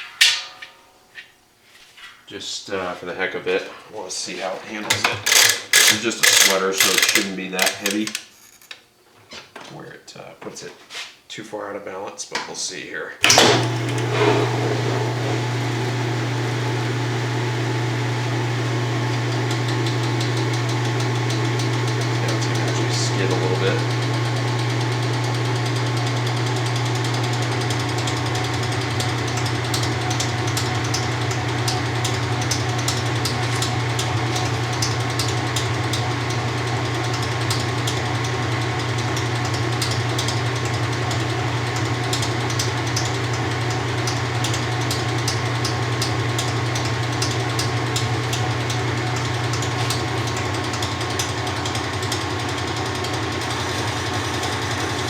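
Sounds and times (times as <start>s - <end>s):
washing machine motor humming: 5.0s - 8.3s, 13.2s - 55.0s
fast ticking: 5.3s - 8.3s.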